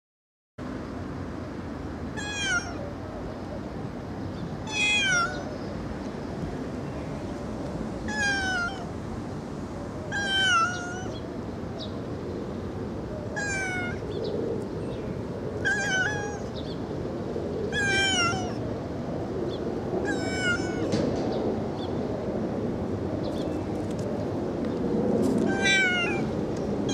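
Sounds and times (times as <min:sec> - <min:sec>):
kitten meowing: 0:02.2 - 0:02.8, 0:04.7 - 0:05.5, 0:08.1 - 0:08.9, 0:10.1 - 0:11.2, 0:13.4 - 0:14.1, 0:15.6 - 0:16.6, 0:17.7 - 0:18.6, 0:20.0 - 0:20.9, 0:25.4 - 0:26.3.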